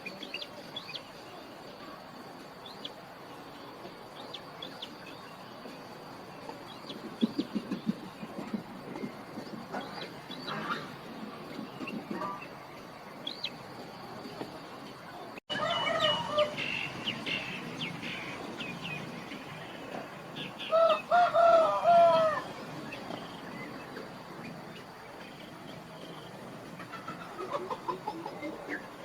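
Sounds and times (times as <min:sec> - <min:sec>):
chickens clucking: 0:06.4 - 0:29.0.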